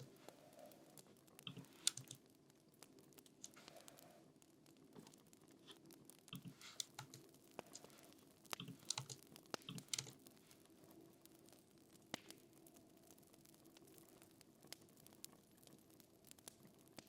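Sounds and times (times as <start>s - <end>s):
faint steady hum: 0.0s - 17.0s
typing on computer keyboard: 1.4s - 2.2s, 6.3s - 7.9s, 8.6s - 10.2s.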